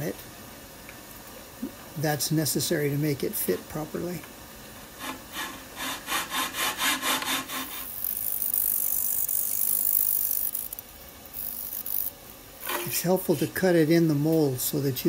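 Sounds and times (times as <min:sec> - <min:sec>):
saw cutting thin wood: 0:05.0 - 0:08.1.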